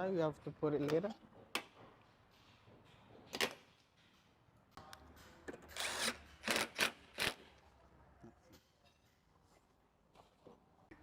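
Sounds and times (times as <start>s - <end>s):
tools clicking and knocking: 0.8s - 7.4s.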